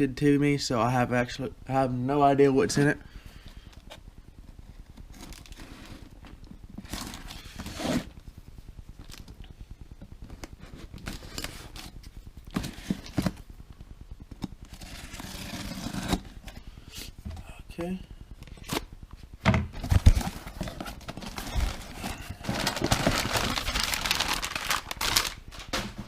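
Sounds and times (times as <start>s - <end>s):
cardboard flaps rustling: 19.5s - 26.0s.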